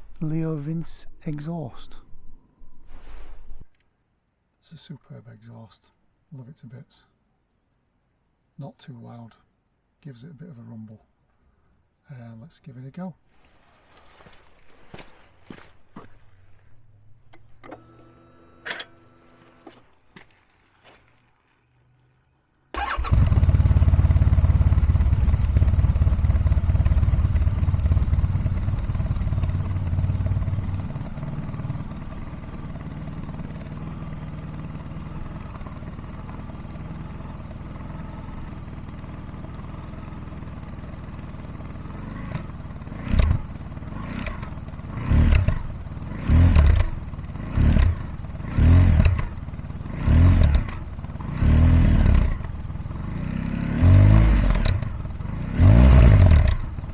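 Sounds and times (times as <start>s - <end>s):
motorcycle engine idling: 21.4s - 53.6s, 54.4s - 55.5s, 56.4s - 56.9s.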